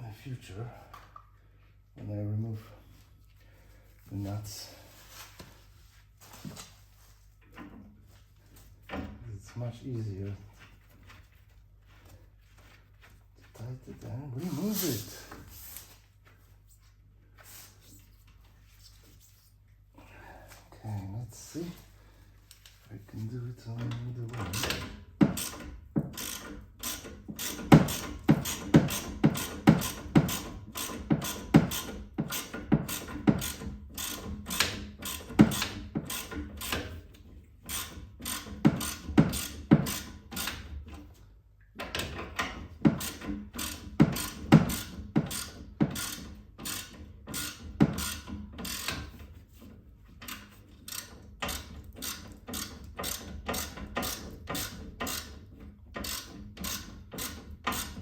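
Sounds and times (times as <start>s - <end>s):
ratchet wrench clicking: 25.4s - 36.9s, 37.7s - 40.6s, 43.0s - 49.1s, 50.2s - 55.4s, 56.0s - 58.0s.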